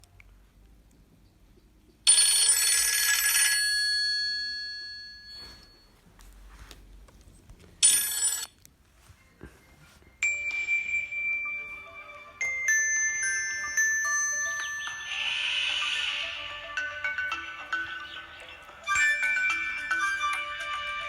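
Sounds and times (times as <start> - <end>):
electronic ringtone melody: 2.1 - 5.9, 7.8 - 8.5, 10.2 - 21.0
bell-like phone chime: 2.1 - 6.0, 7.8 - 8.5, 10.2 - 21.0.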